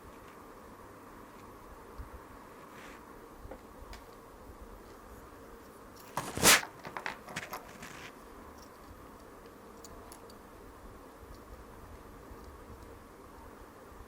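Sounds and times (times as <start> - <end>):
loud crunching scrape: 6.1 - 8.1.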